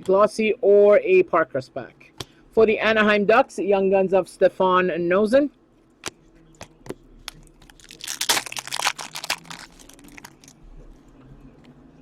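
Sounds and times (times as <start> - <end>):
foil wrapper crinkling: 7.3 - 10.6.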